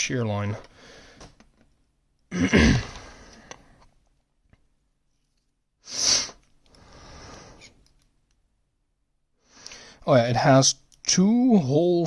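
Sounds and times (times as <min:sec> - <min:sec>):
person breathing through nose: 0:05.8 - 0:07.8, 0:09.4 - 0:10.0
sharp sniff: 0:05.8 - 0:07.8.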